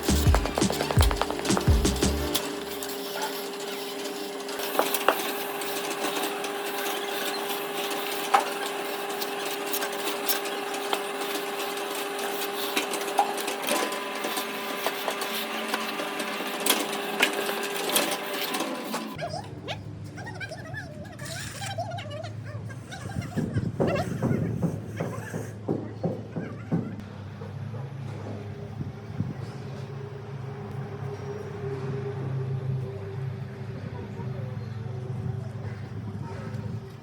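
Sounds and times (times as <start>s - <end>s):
scattered clicks and knocks: 0.0s - 6.9s
small machine humming: 0.0s - 19.2s.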